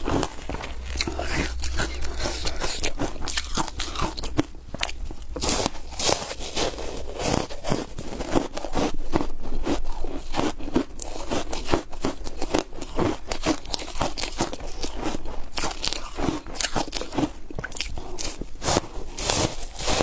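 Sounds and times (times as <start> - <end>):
crunching and chewing ice: 0.0 - 20.0.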